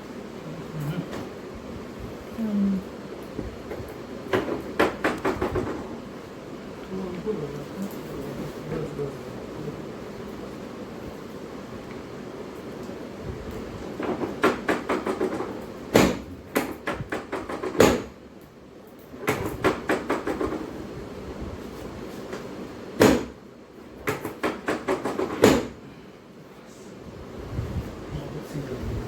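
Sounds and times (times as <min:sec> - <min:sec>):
quick knocks: 0:04.3 - 0:05.9
heavy thumps: 0:14.0 - 0:18.1.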